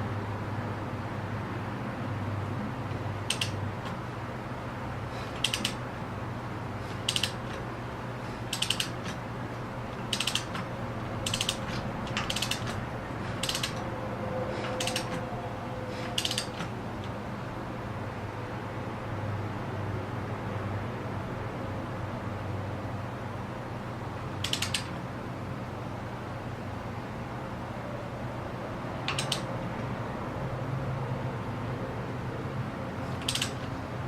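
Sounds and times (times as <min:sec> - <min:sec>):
socket ratchet clicking: 0:03.2 - 0:04.0, 0:05.3 - 0:05.8, 0:06.9 - 0:07.6, 0:08.4 - 0:09.2, 0:09.9 - 0:13.9, 0:14.7 - 0:15.3, 0:16.1 - 0:16.8, 0:24.4 - 0:25.0, 0:29.1 - 0:29.5, 0:33.2 - 0:33.7.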